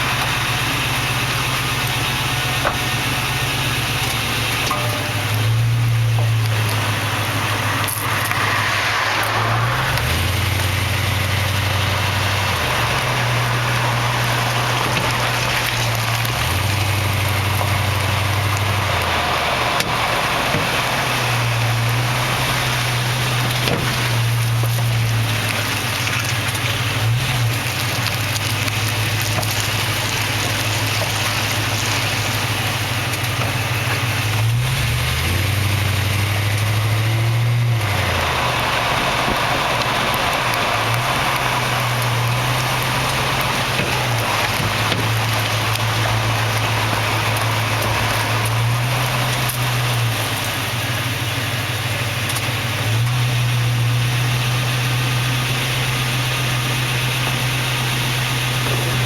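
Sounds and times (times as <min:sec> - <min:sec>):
low drivetrain hum: 0:00.0 - 0:59.0
sharp clunks from truck: 0:23.5 - 0:24.2.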